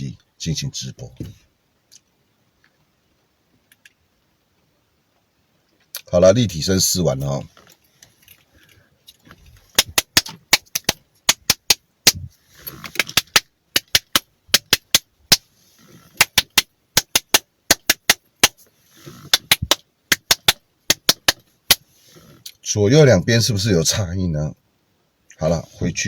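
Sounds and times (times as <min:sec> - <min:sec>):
rapid sharp clicks: 0:09.7 - 0:15.5, 0:16.1 - 0:21.8.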